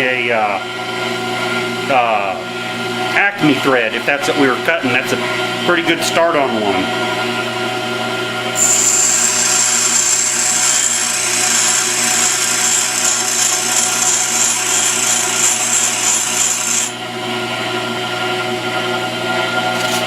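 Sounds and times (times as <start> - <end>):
high-pitched grinding hiss: 8.6 - 16.9
grinder motor hum: 8.6 - 17.8, 19.2 - 20.0.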